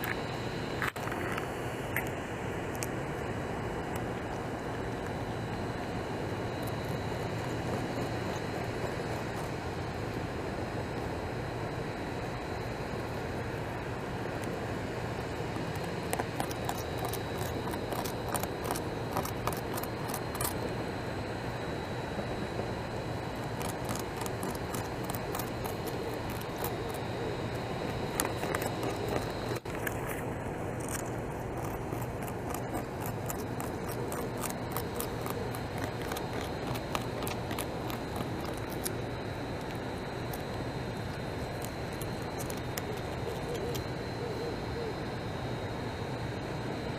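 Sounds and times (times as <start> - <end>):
beaver gnawing bark: 0.0 - 10.7, 13.1 - 44.4.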